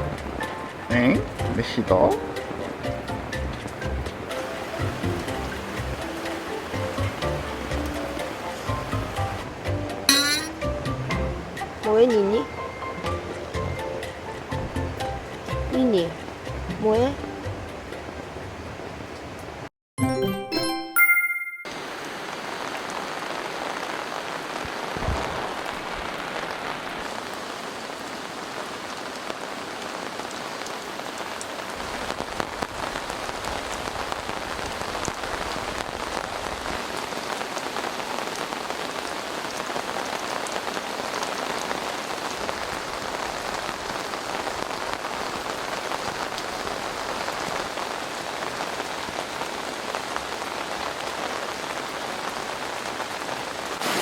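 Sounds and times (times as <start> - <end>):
raindrops ticking: 0.0 - 18.2
rain falling: 0.0 - 19.7, 21.7 - 54.0.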